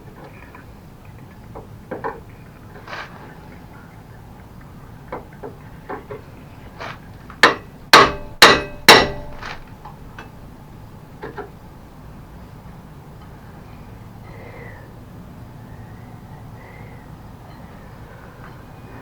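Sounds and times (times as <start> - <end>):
hammer striking metal: 7.4 - 10.6.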